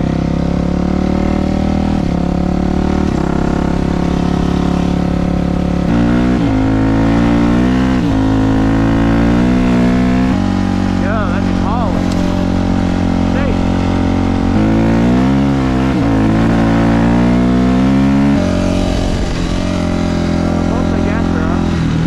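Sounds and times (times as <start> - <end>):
dirt bike engine revving: 0.0 - 22.0.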